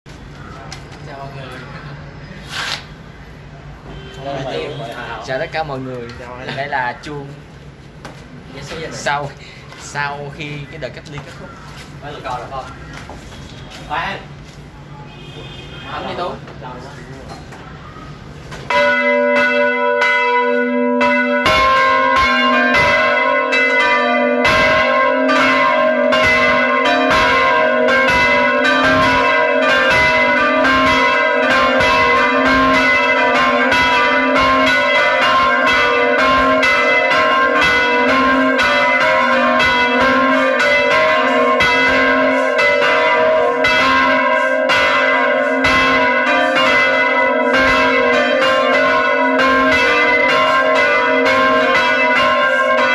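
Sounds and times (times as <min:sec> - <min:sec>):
church bells pealing: 0:18.7 - 0:52.9.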